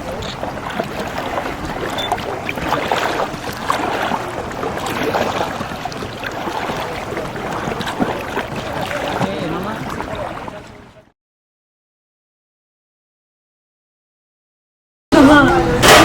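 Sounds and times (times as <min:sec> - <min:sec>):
water splashing from paddling: 0:00.0 - 0:11.1.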